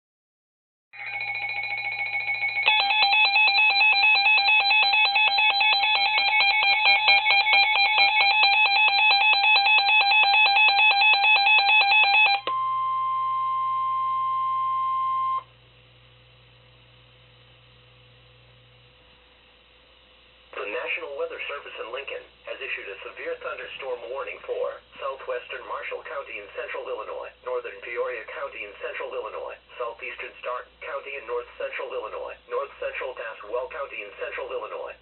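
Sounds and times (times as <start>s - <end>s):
pulsing electronic alarm: 1.0s - 15.5s.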